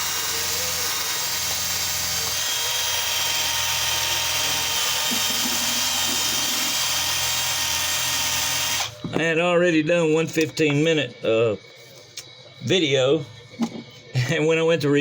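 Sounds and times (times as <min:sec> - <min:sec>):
drill grinding rust off metal: 0:00.0 - 0:09.0.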